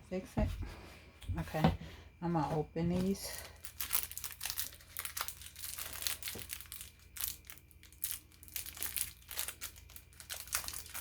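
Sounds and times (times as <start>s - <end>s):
packaging crinkling and rustling: 3.0s - 11.0s.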